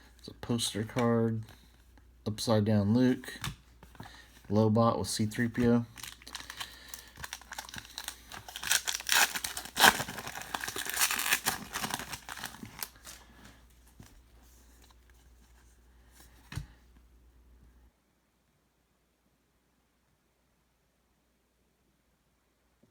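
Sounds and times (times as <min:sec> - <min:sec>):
wrapper tearing and crinkling: 0:05.9 - 0:13.3.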